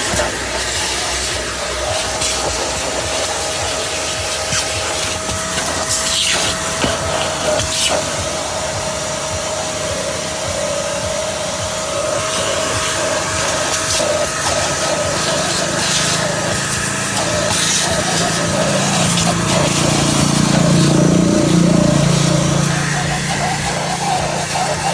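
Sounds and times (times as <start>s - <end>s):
small motor whining: 0.0s - 24.9s
low running note: 16.4s - 24.7s.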